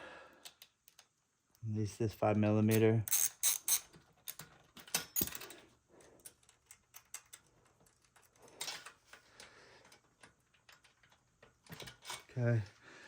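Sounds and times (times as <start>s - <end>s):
metal parts clinking: 2.7s - 5.6s, 10.2s - 12.5s.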